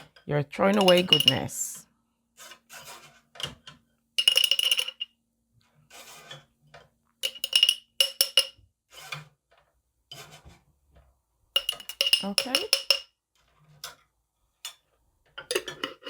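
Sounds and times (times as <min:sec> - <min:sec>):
metal utensil clinking on glass jar: 0:00.7 - 0:01.6, 0:04.2 - 0:05.0, 0:07.2 - 0:08.6, 0:11.6 - 0:13.1.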